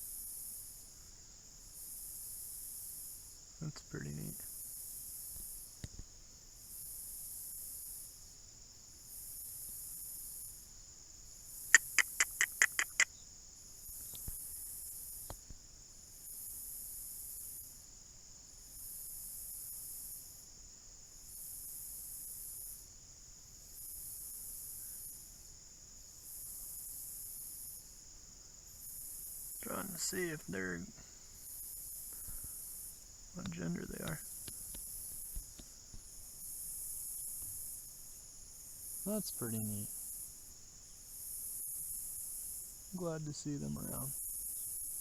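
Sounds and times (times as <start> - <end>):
insects droning: 0.0 - 45.0
pulsing insect call: 0.0 - 45.0
sharp clicks: 11.8 - 13.1, 33.4 - 36.0.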